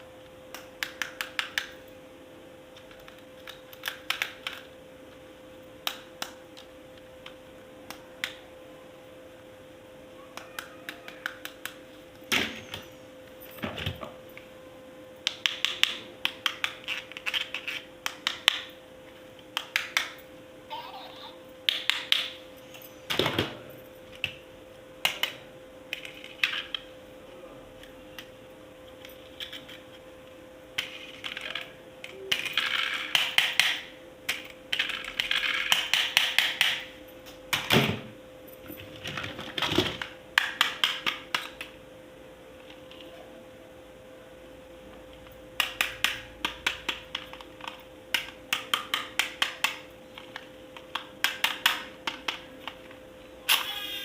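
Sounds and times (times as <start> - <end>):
faint steady hum: 0.0 - 54.0
plastic toy pieces clicking: 32.3 - 36.8.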